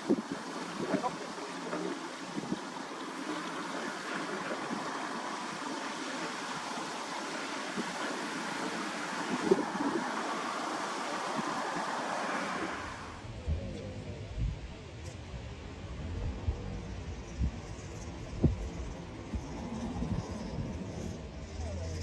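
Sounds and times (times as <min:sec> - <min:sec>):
river water lapping: 0:00.0 - 0:13.2
wind on microphone: 0:00.0 - 0:22.0.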